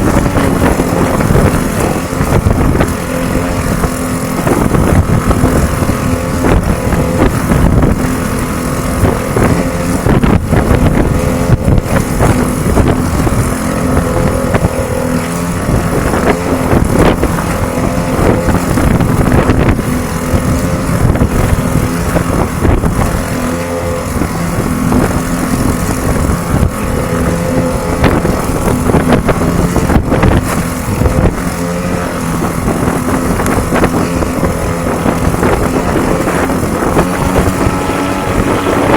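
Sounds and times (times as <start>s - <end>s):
small boat motor running: 0.0s - 38.9s
wind on microphone: 0.0s - 38.9s.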